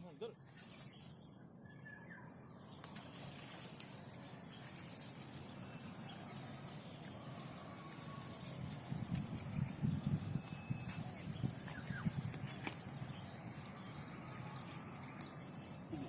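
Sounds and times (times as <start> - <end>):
high-pitched insect drone: 5.6 - 16.0.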